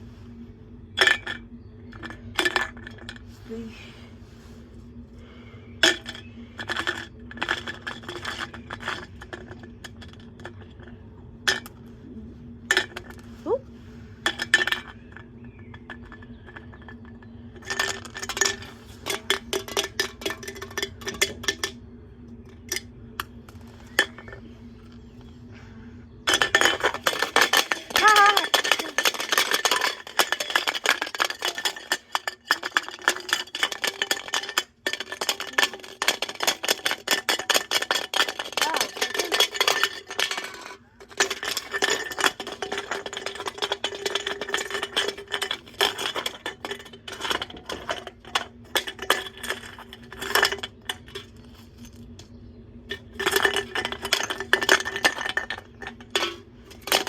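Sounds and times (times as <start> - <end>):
metallic clattering and rattling: 5.8 - 11.8, 14.2 - 21.8, 26.2 - 57.0.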